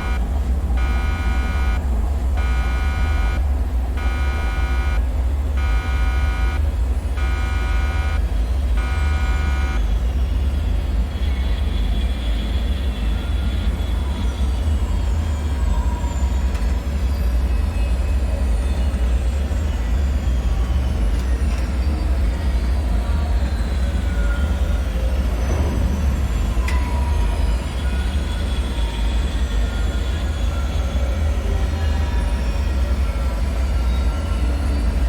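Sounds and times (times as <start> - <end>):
alarm buzzer beeping: 0.0 - 10.0
deep rumble: 0.0 - 10.1.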